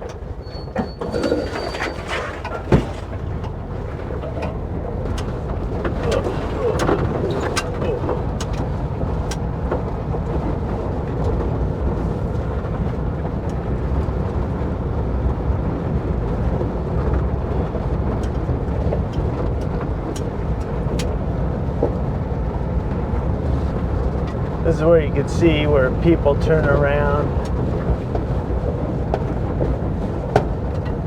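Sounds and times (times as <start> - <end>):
rattling clicks and knocks: 0.0 - 11.7
vehicle engine and road rumble: 0.0 - 31.0.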